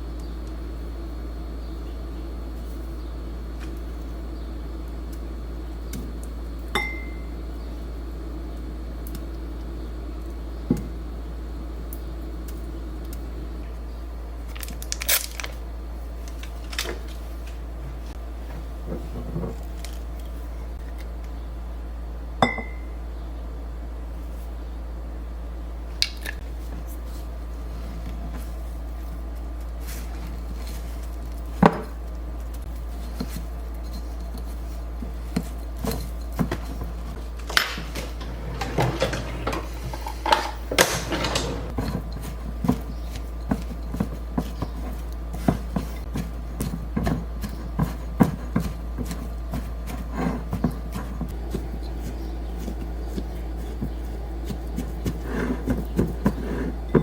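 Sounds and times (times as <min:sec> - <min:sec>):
steady low hum: 0:00.0 - 0:57.0
utensils and dishes clinking: 0:35.4 - 0:44.8.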